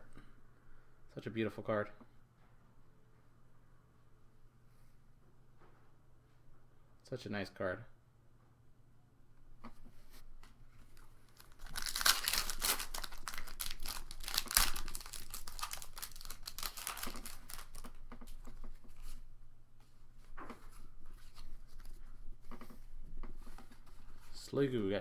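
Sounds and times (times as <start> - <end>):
foil pack tearing and crinkling: 11.0 - 18.6.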